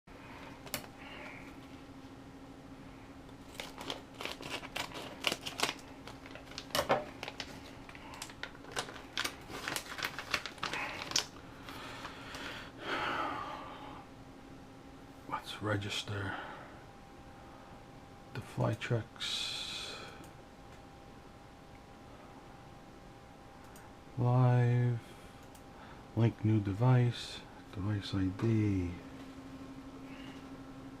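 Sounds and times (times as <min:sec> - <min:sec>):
steady low hum: 0:00.1 - 0:31.0.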